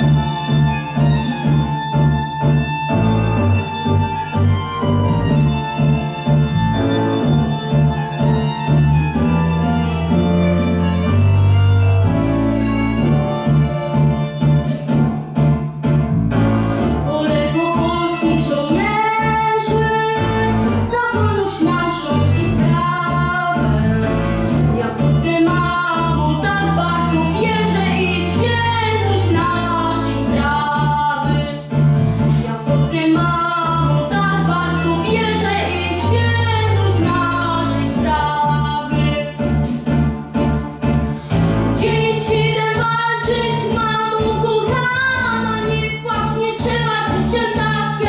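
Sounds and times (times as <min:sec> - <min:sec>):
instrumental accompaniment with beat: 0:00.0 - 0:48.0
boy singing: 0:17.1 - 0:23.9, 0:41.8 - 0:48.0.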